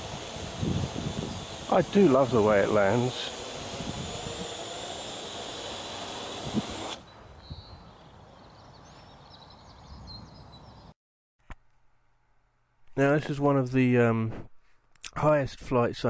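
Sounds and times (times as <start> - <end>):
drone rotors whirring: 0.0 - 7.1.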